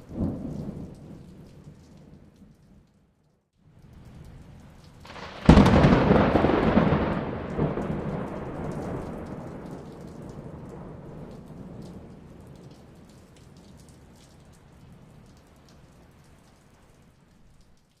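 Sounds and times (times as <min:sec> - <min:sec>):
thunder crack and rumble: 0:00.0 - 0:02.8, 0:03.9 - 0:15.4
steady rain: 0:00.0 - 0:18.0.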